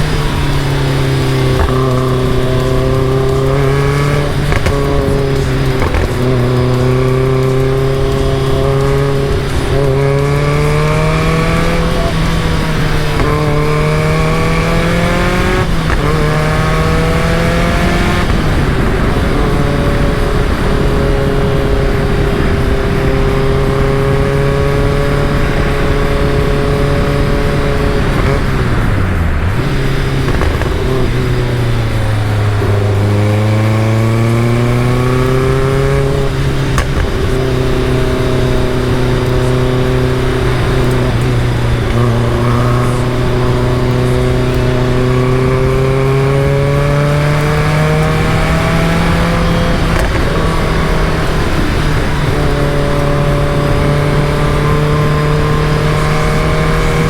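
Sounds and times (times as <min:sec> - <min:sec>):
car engine accelerating: 0:00.0 - 0:57.0.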